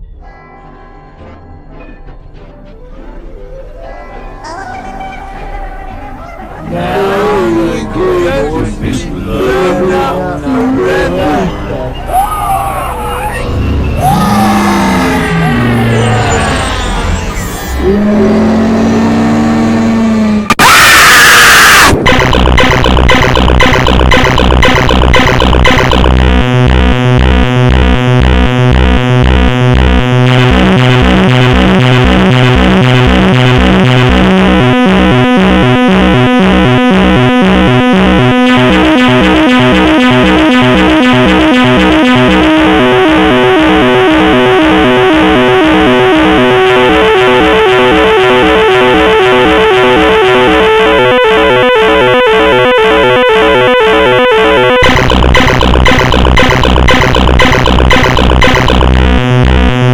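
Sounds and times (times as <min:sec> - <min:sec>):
synthesizer music with pulsing beat: 0:13.4 - 0:59.9.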